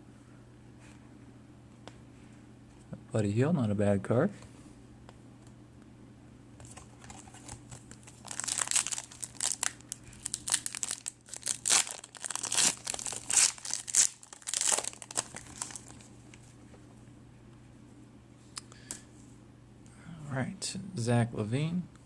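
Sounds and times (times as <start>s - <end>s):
plastic wrapper crinkling and tearing: 7.0s - 16.1s.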